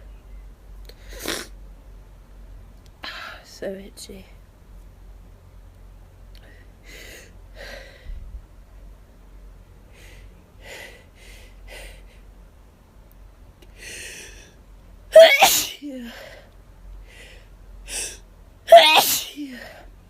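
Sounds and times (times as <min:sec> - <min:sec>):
person sniffing: 0:01.1 - 0:01.5
person sneezing: 0:15.2 - 0:16.3, 0:18.7 - 0:19.8.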